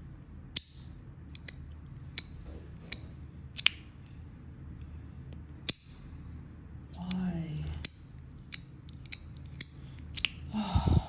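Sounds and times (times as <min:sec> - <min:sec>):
fidget toy clicking: 0:07.8 - 0:10.4.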